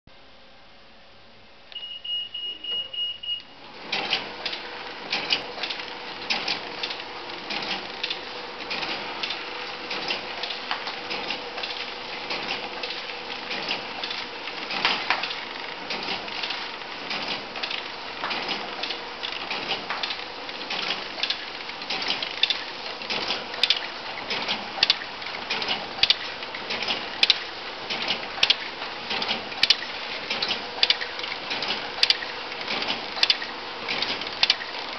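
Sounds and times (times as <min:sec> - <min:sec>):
high beep: 0:01.8 - 0:03.5
wrapping machine clattering: 0:03.6 - 0:34.9.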